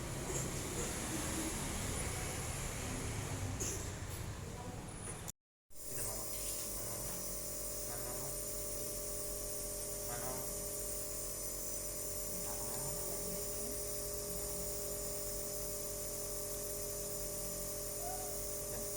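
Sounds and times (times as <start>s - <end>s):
electrical hum and buzz: 5.8s - 18.9s.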